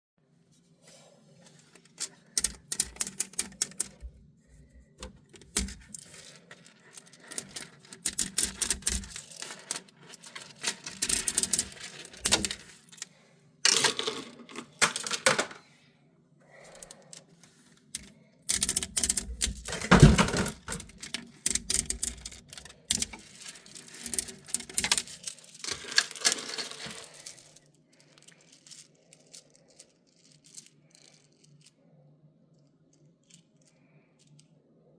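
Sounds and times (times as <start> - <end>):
plastic segments clicking and rattling: 1.7 - 13.1, 13.7 - 15.6, 16.7 - 17.3, 18.0 - 31.7.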